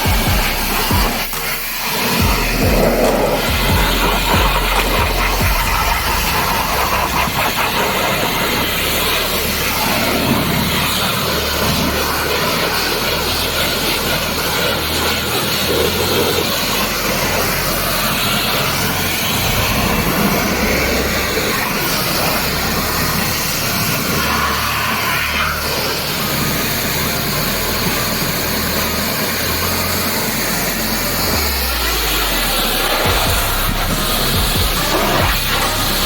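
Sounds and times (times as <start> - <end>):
pressure washer spraying: 0.0 - 36.0.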